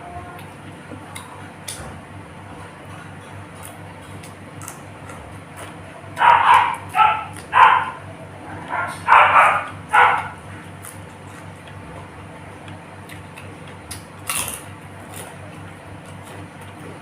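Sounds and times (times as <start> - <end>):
dog barking: 6.2 - 10.4.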